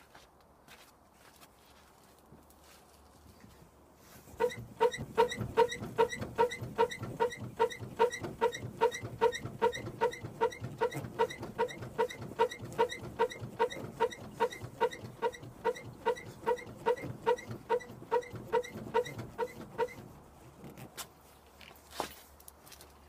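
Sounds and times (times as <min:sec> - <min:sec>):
rhythmic squeaky creak: 0:04.4 - 0:20.2.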